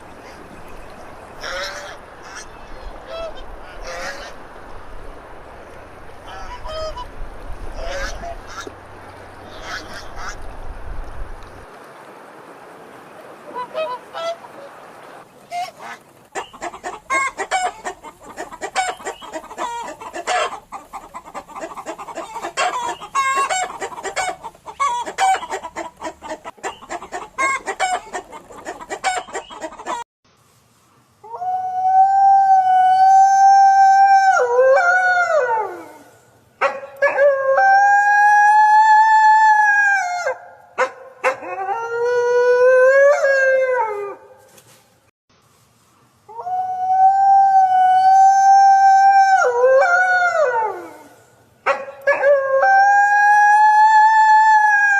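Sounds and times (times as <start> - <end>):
chickens clucking: 7.8 - 8.8, 9.4 - 10.4, 15.5 - 30.1
rooster crowing: 52.0 - 54.9.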